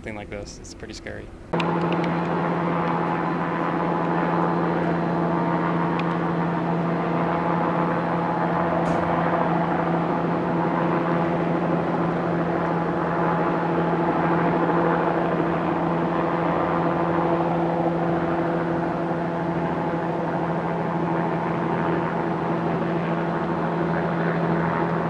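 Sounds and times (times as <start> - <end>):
machine humming: 0.0 - 25.0.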